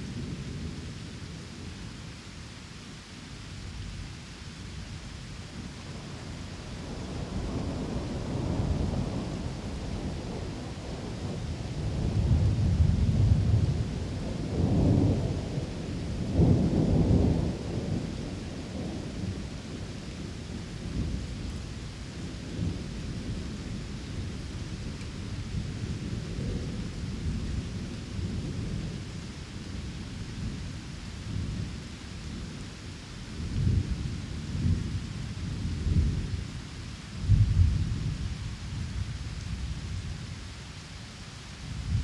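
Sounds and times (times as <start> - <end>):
steady rain: 0.0 - 42.0
rolling thunder: 37.3 - 38.3.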